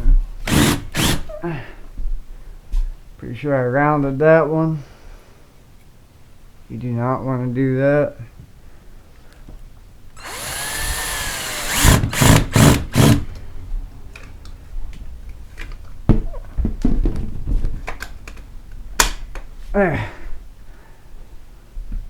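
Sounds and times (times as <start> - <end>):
power drill driving screws: 0.4 - 1.3, 10.2 - 13.4.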